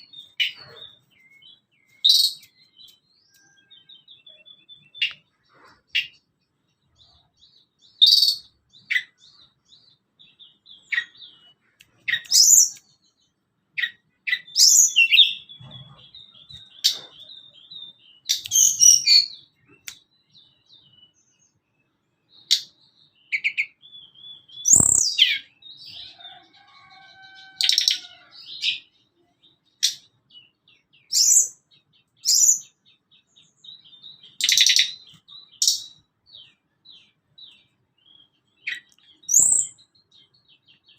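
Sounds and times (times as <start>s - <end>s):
bird chirping and whistling: 0.0s - 2.5s, 8.0s - 9.1s, 12.1s - 12.8s, 13.8s - 19.8s, 23.3s - 25.6s, 31.1s - 31.6s, 32.2s - 32.7s, 34.4s - 36.0s, 38.6s - 39.8s.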